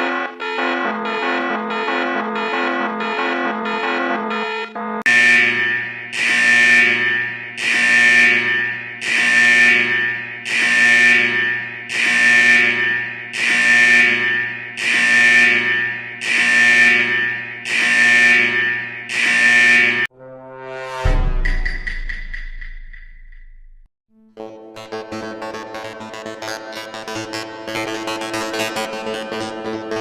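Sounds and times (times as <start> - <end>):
buzzy alarm beeps: 0.0 - 20.1
lower alarm tone: 0.0 - 22.2.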